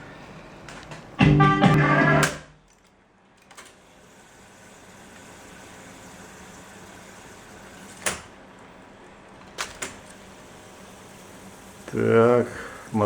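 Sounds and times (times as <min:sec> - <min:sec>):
tape recorder winding whir: 0:01.8 - 0:08.3, 0:09.6 - 0:13.0.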